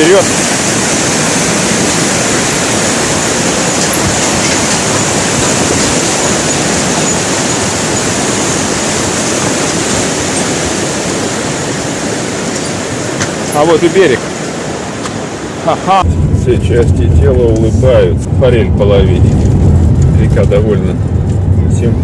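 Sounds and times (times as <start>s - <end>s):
river rushing: 0.0s - 16.1s.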